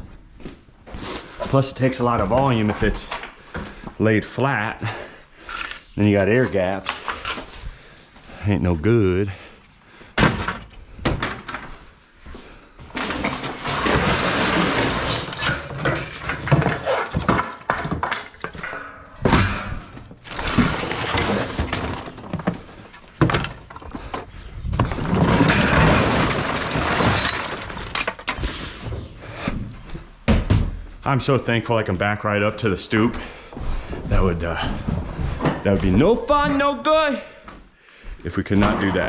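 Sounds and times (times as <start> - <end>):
plaster debris clattering: 12.9 - 28.6.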